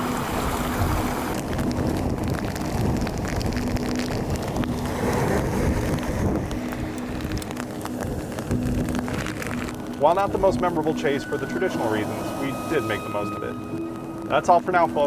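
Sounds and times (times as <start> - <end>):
wind buffeting microphone: 0.3 - 11.3
light crackling ticks: 1.3 - 10.9.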